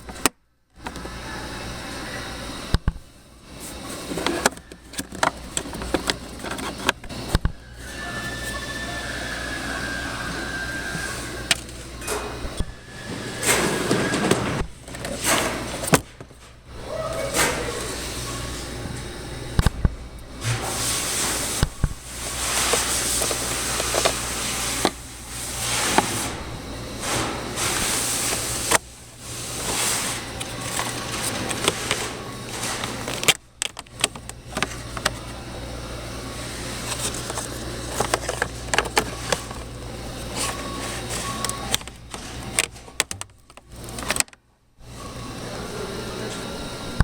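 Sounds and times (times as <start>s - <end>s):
steady low hum: 9.5s - 47.0s.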